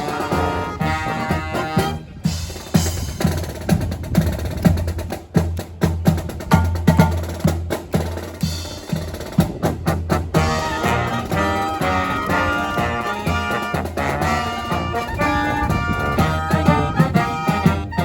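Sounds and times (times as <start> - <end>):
brass and wind chords: 0.0 - 3.2, 8.8 - 18.0
snare and bass drum cadence: 0.0 - 18.0.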